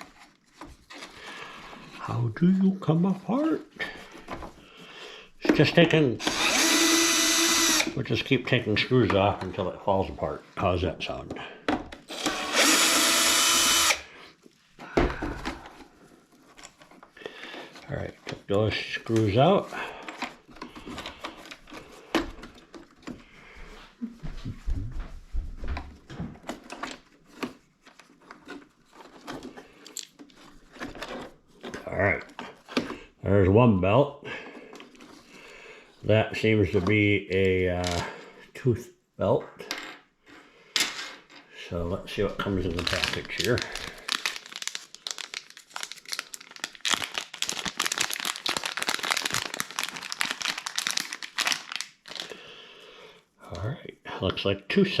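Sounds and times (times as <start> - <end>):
packaging crinkling: 42.1 - 52.5.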